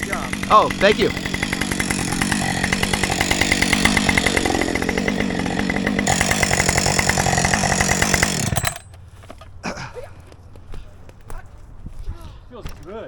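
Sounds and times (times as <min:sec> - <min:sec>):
chainsaw engine running: 0:00.0 - 0:09.5.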